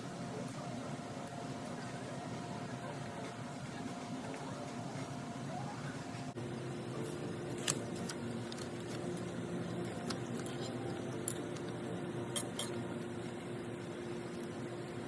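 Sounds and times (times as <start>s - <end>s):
low background hum: 0.0s - 15.0s
dishes and utensils clicking: 9.8s - 12.8s.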